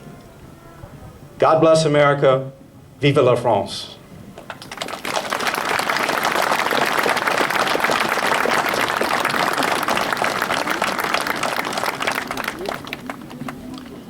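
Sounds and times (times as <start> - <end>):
crowd applauding: 4.5 - 14.0.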